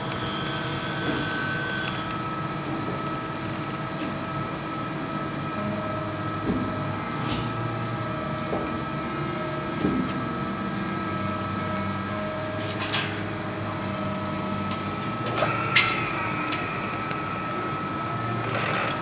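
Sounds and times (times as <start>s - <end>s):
whirring tones: 0.0s - 2.4s, 13.8s - 19.0s
machine hum with high whine: 0.0s - 19.0s.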